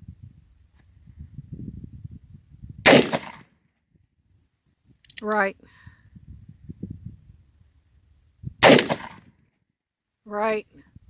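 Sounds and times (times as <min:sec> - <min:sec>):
revolver gunshot: 0:02.8 - 0:03.5, 0:08.6 - 0:09.3.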